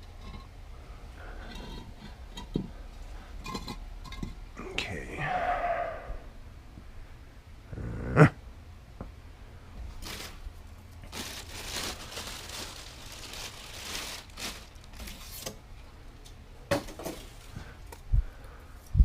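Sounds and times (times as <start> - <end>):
packing material rustling and crinkling: 9.9 - 15.6.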